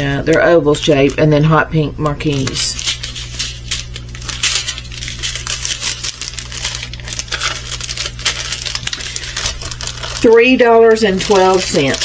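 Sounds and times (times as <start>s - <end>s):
beads rattling in plastic bags: 4.2s - 12.0s.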